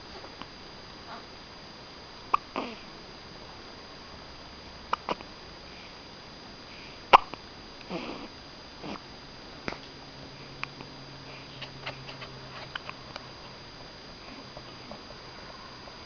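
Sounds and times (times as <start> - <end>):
baby hiccuping: 4.9 - 5.2, 7.1 - 8.3
soft breathy sounds: 14.1 - 15.0.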